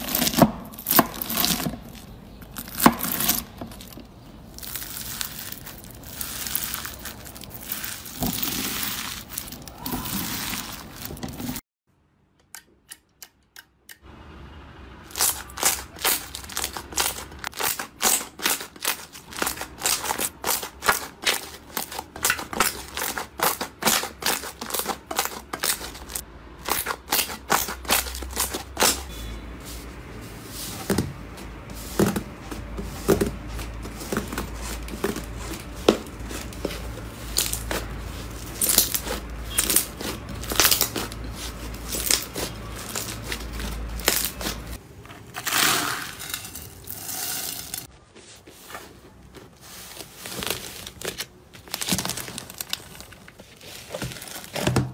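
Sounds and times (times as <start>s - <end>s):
slime crackling and popping: 4.5s - 11.6s, 15.1s - 29.0s, 37.2s - 44.8s.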